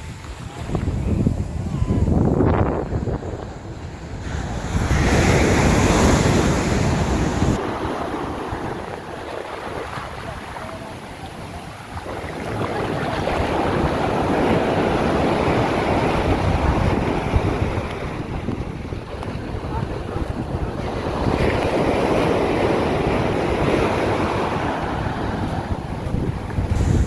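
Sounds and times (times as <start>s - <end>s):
sea surf breaking: 0.0s - 27.0s
wind buffeting microphone: 0.0s - 27.0s.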